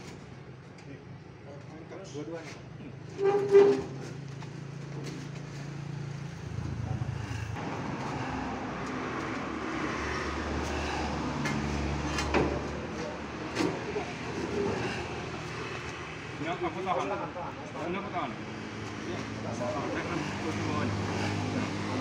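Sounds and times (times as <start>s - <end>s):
vehicle engine running: 4.8s - 9.4s.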